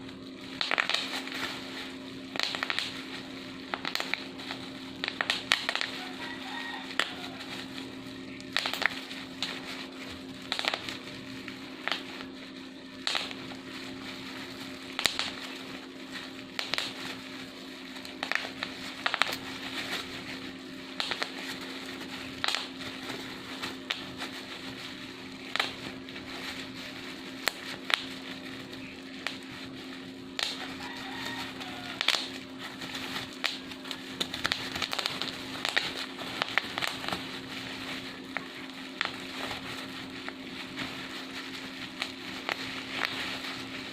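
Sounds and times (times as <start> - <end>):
bubble wrap popping: 0.0 - 43.9.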